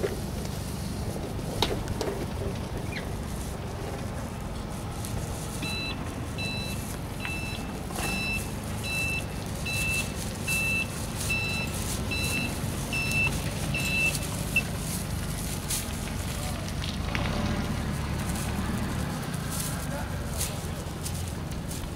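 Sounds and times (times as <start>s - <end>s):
reversing alarm beeping: 5.6s - 14.7s.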